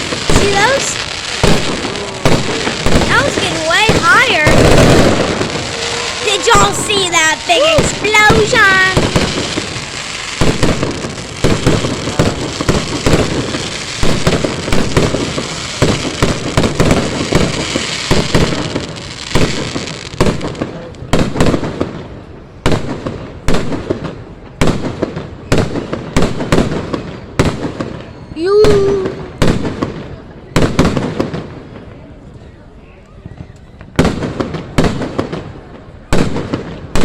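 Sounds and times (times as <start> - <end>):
fireworks bangs and crackling: 0.0 - 37.0.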